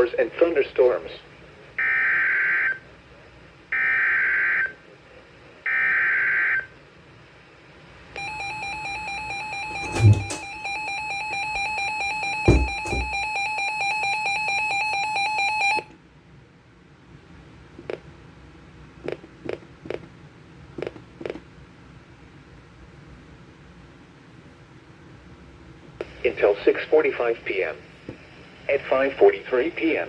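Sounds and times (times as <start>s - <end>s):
knocks from handling radio: 8.2s - 10.8s, 12.1s - 13.3s.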